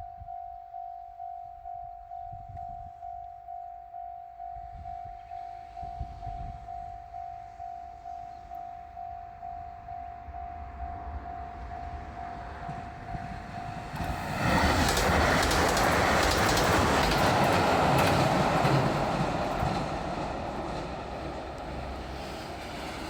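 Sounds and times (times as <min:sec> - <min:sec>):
level-crossing warning bell: 0:00.0 - 0:23.0
train wheels clacking over rail joints: 0:12.7 - 0:23.0.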